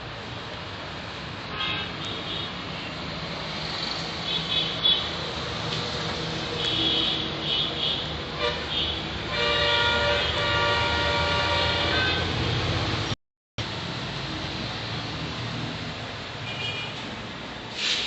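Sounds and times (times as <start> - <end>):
road traffic noise: 0.0 - 18.0
vehicle horn: 6.6 - 12.4.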